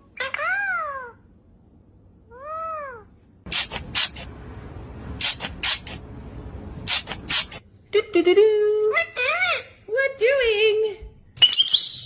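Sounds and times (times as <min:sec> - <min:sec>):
cat hissing: 0:03.5 - 0:04.4, 0:05.2 - 0:06.0, 0:06.8 - 0:07.6.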